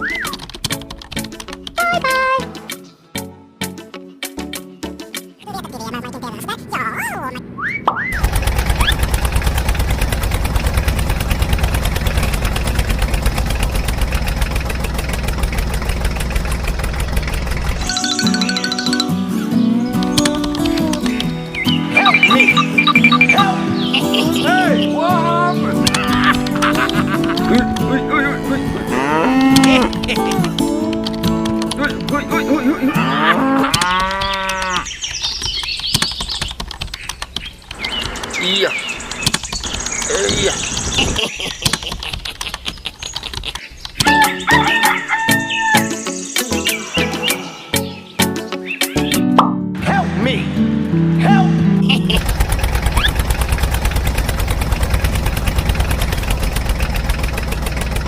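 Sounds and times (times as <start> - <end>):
sharp clicks and taps: 0.0 - 1.9, 20.0 - 21.4, 29.6 - 32.3, 41.6 - 44.1
engine idling with chugging knock: 8.1 - 17.9, 52.2 - 58.0
high chirping: 17.8 - 25.6, 34.6 - 41.6, 42.6 - 49.4
cow mooing: 27.5 - 30.3, 32.8 - 34.9.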